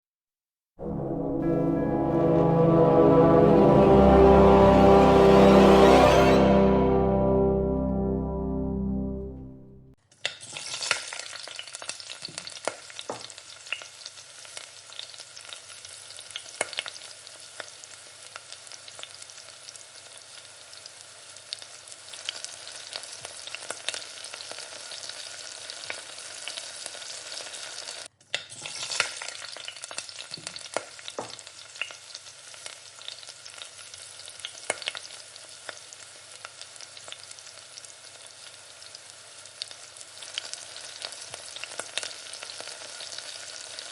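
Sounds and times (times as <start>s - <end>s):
oil crackling and popping: 10.1s - 43.9s
food sizzling in oil: 10.4s - 43.9s.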